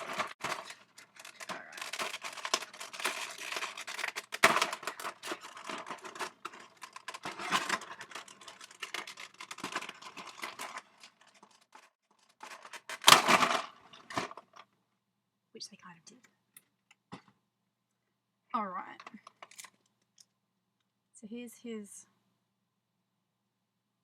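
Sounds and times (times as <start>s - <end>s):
plastic wrap crinkling and tearing: 0.0s - 14.2s.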